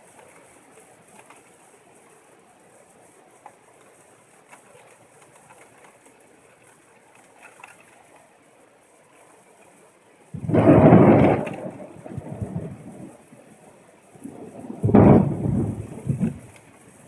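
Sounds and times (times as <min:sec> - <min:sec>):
faint outdoor hiss: 0:00.0 - 0:17.0
soft ticks and clicks: 0:03.2 - 0:13.0.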